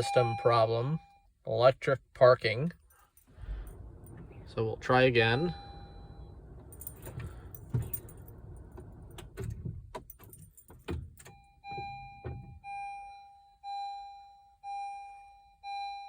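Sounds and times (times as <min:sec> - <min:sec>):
car warning chime beeping: 0:00.0 - 0:01.4, 0:03.4 - 0:16.0
keys jingling: 0:02.8 - 0:04.5, 0:06.5 - 0:11.3.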